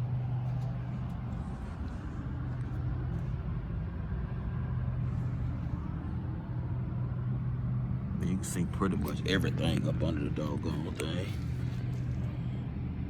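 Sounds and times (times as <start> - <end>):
truck engine idling: 0.0 - 13.0.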